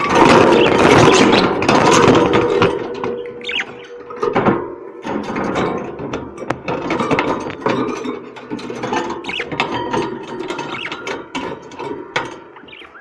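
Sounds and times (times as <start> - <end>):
budgerigars chattering: 0.0 - 2.2, 3.1 - 4.1, 9.2 - 9.6, 10.5 - 11.1, 12.5 - 13.0.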